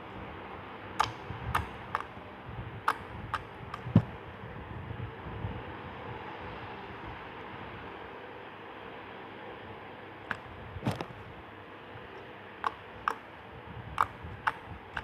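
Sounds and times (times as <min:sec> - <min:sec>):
handling rustle: 0:10.3 - 0:11.3.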